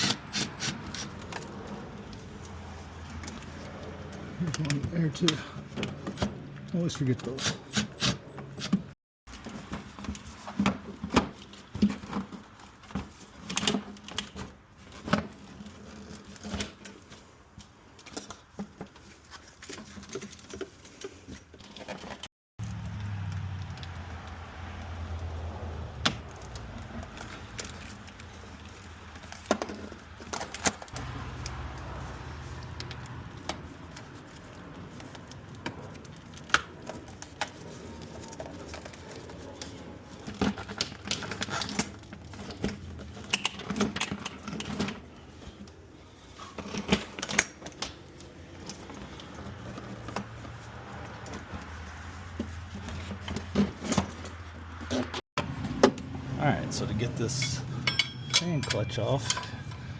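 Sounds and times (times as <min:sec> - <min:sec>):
hand tools clicking and clinking: 0:57.0 - 0:59.9.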